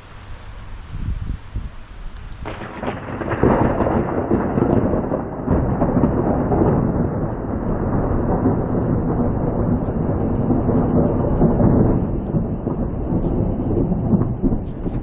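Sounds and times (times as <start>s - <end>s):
steady rain: 0.0s - 15.0s
thunder rumbling: 0.0s - 15.0s.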